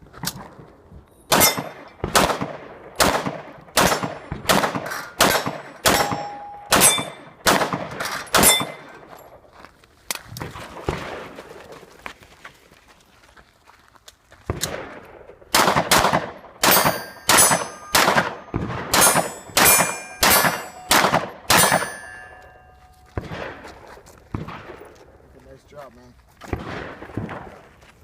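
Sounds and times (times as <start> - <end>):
pistol shots: 1.3 - 8.9, 14.5 - 22.6, 23.2 - 24.9, 26.4 - 27.6
metallic ring: 5.7 - 7.4, 8.3 - 9.0, 16.7 - 18.0, 19.0 - 20.9, 21.5 - 23.1.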